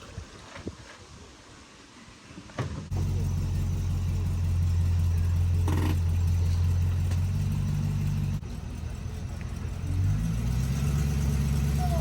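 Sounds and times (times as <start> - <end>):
car engine idling: 2.9 - 12.0.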